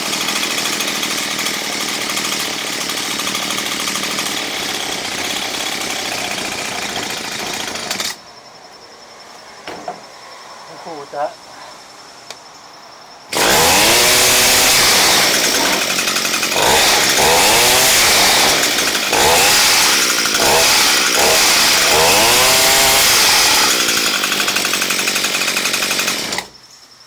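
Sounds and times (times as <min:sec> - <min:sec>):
hedge trimmer engine revving: 0:00.0 - 0:08.2, 0:13.3 - 0:26.5.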